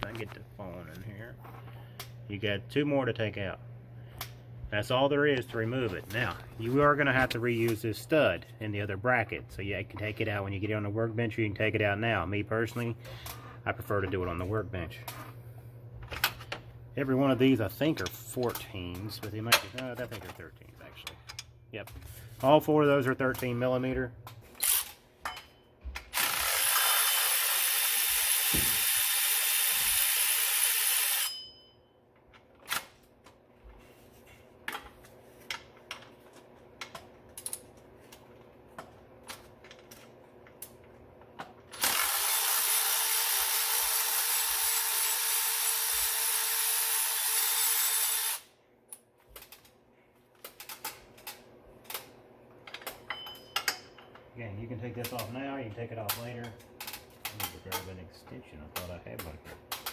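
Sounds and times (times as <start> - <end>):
power ratchet spinning bolts: 26.1 - 31.3, 41.7 - 48.4.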